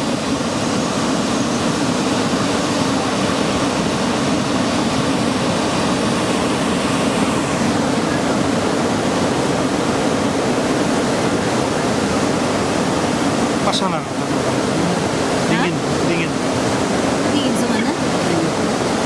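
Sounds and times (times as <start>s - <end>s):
waterfall roaring: 0.0s - 19.0s.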